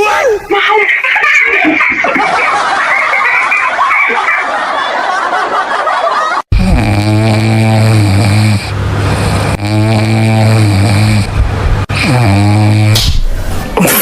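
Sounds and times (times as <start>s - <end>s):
man snoring loudly: 6.5s - 13.2s.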